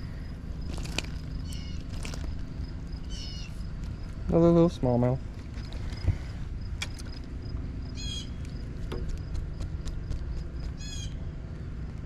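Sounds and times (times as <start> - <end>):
bird harsh calls: 0.0 - 4.1, 7.9 - 8.4, 10.8 - 11.2
steady low rumble: 0.0 - 12.0.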